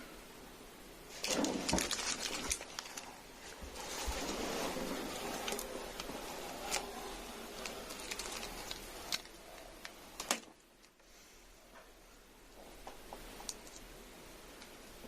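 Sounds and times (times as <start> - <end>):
handling rustle: 1.1 - 11.0.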